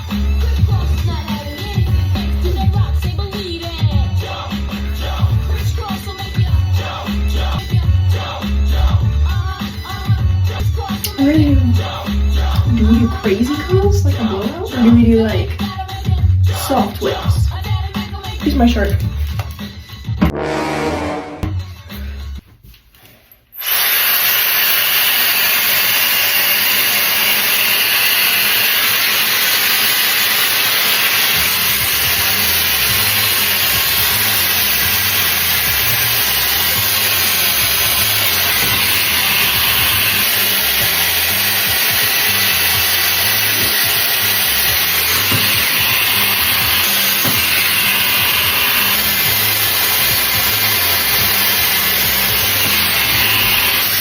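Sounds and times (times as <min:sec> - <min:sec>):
hair dryer blowing: 0:23.6 - 0:54.0.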